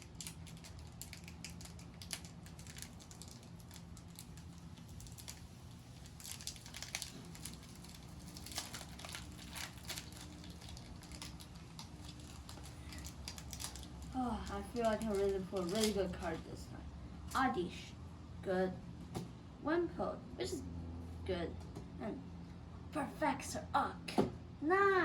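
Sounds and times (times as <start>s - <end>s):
foil wrapper crackling: 0.0s - 16.5s.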